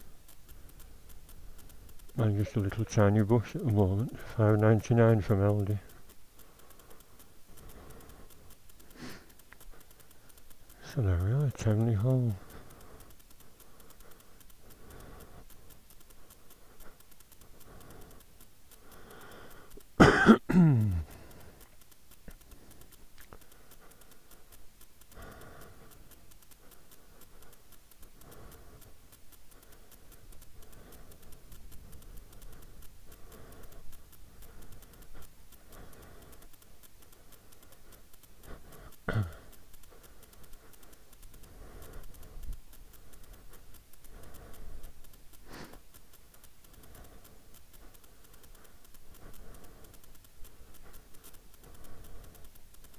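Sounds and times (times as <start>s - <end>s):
faint low background sound: 0.0s - 52.9s
person coughing: 20.0s - 21.1s, 39.1s - 39.4s.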